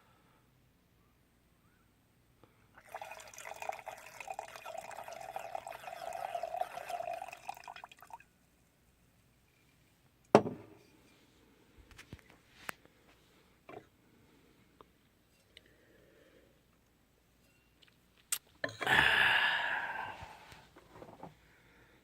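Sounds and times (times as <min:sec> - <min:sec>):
liquid pouring into container: 0:02.8 - 0:08.3.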